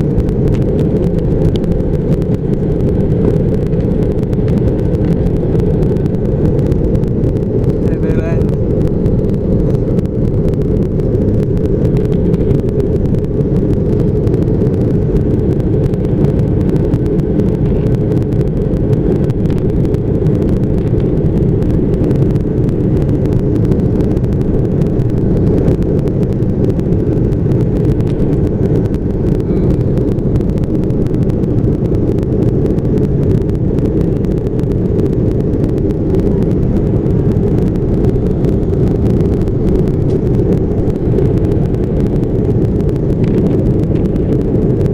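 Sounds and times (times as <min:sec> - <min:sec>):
airplane engine drone: 0:00.0 - 0:44.9.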